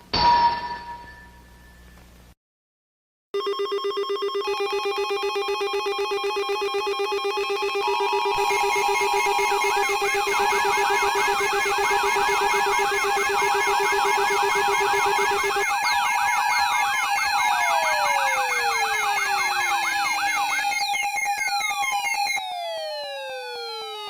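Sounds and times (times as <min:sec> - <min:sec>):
held electronic alert tones: 0:03.4 - 0:20.8
warbling siren sweep: 0:04.4 - 0:24.0
long falling electronic glides: 0:04.5 - 0:24.0.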